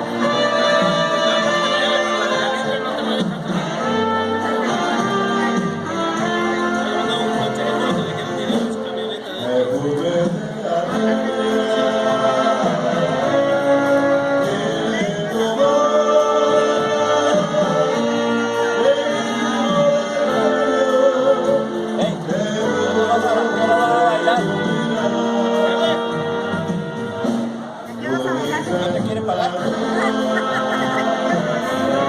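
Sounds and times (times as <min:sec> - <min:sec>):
band playing: 0:00.0 - 0:32.0
person singing long notes: 0:09.4 - 0:32.0.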